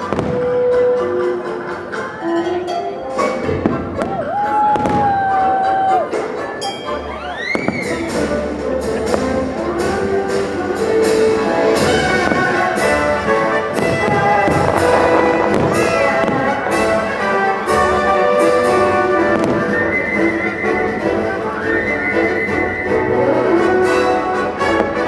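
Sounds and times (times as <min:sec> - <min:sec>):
orchestral music with brass: 0:00.0 - 0:25.0
firework bursts cracking: 0:07.5 - 0:22.7.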